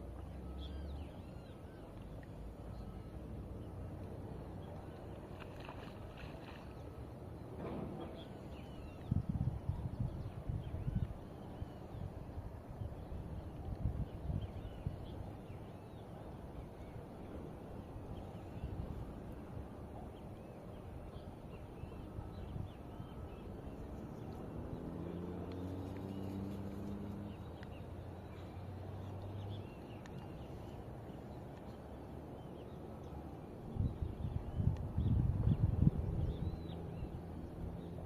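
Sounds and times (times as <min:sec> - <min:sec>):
distant engine hum: 0:00.0 - 0:38.0
wind or handling rumble: 0:33.7 - 0:38.0.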